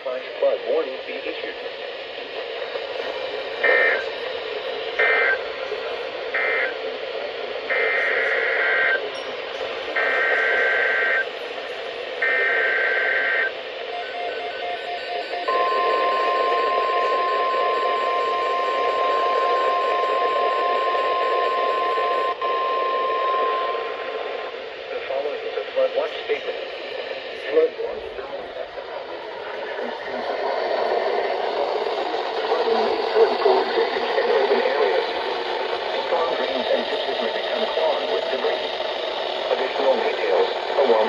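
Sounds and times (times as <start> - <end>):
radio hiss: 0.0 - 41.0
warbling data bursts: 7.7 - 24.5.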